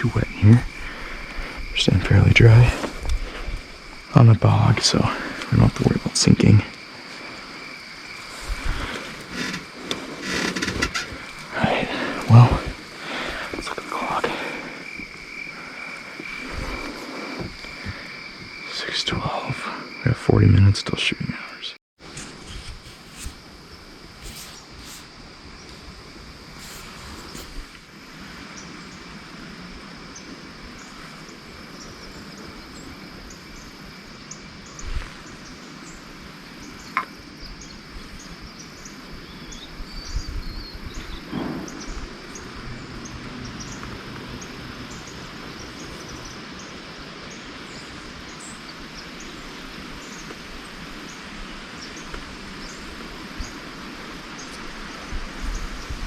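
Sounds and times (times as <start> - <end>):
constant hiss: 0.0 - 56.0
insects chirping: 0.0 - 56.0
soft rustles: 7.1 - 13.7, 22.0 - 23.6, 24.2 - 25.1, 26.5 - 27.8.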